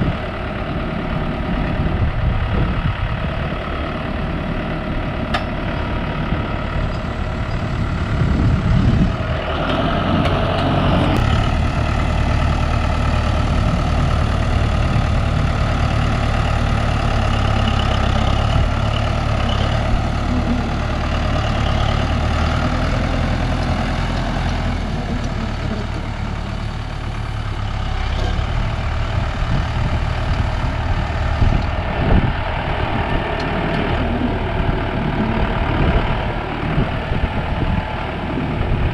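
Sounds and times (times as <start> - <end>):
heavy vehicle engine running: 0.0 - 38.9.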